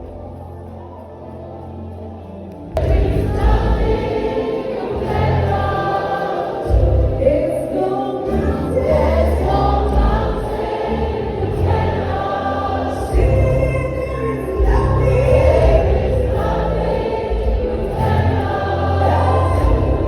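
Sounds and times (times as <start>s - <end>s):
choir singing gospel song: 0.0s - 20.0s.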